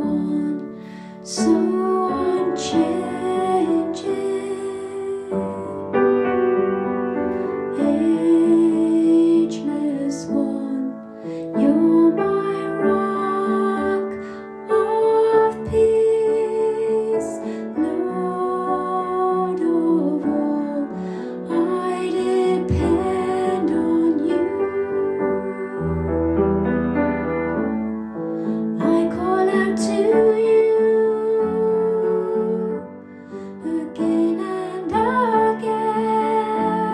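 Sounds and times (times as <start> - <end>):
soft singing voice: 0.0 - 6.0, 7.7 - 11.0, 11.6 - 26.1, 28.8 - 36.9
gentle slow background music: 0.0 - 36.9.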